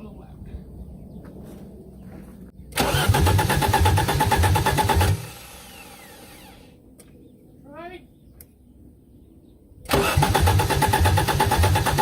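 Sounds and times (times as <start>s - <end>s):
car engine loud pulsing: 2.7s - 6.7s, 9.9s - 12.0s.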